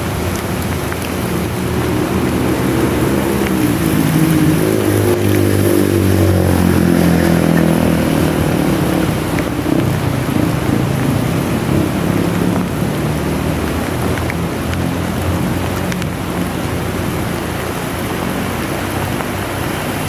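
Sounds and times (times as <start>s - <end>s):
heavy rain hissing: 0.0s - 20.0s
vehicle engine droning: 0.0s - 20.0s.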